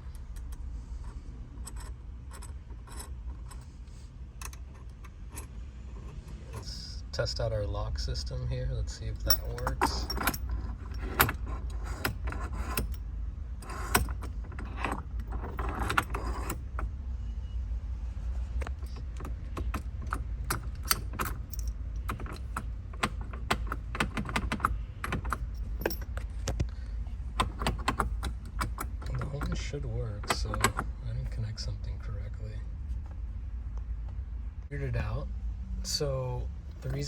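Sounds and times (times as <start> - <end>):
steady low hum: 0.0 - 37.0
lock metal clicks and rattles: 4.4 - 6.7, 9.2 - 13.0, 13.6 - 16.9, 18.6 - 29.6, 30.2 - 30.9
keys jangling: 9.3 - 13.0, 18.7 - 26.3.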